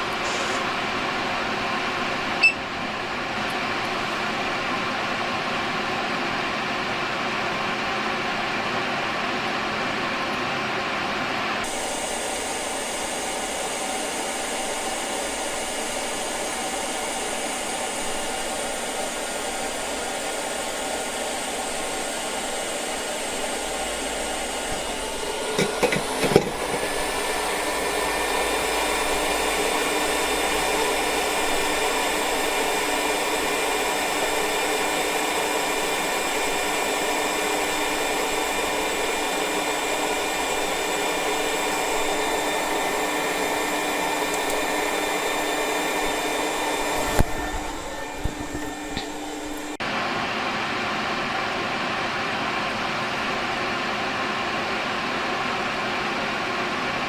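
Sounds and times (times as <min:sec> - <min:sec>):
electric blower whirring: 0:00.0 - 0:57.0
blower clicks: 0:24.7 - 0:27.3, 0:43.4 - 0:49.8.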